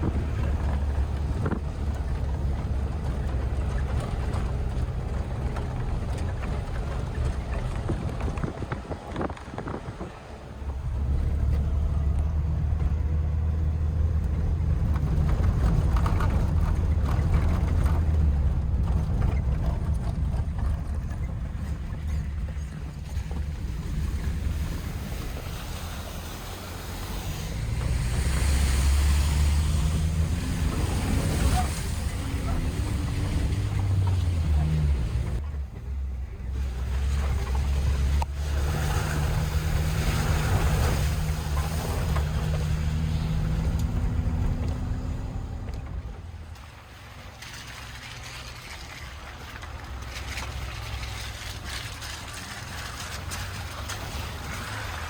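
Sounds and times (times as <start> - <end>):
wind buffeting microphone: 0.0 - 35.7.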